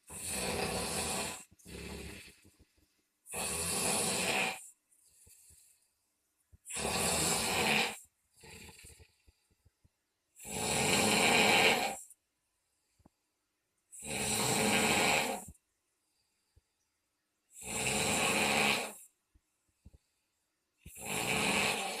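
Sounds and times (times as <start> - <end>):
heavy rasping snores: 0.0 - 2.7, 3.3 - 5.8, 6.6 - 9.5, 10.4 - 12.2, 13.9 - 15.6, 17.5 - 19.1, 20.8 - 22.0
soft breath out: 12.6 - 13.4.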